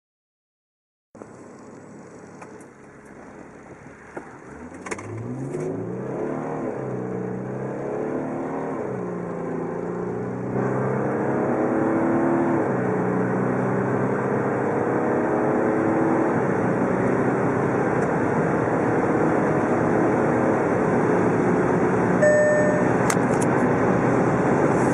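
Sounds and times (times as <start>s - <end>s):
diesel engine accelerating: 1.2s - 24.9s
short beep: 22.2s - 23.1s.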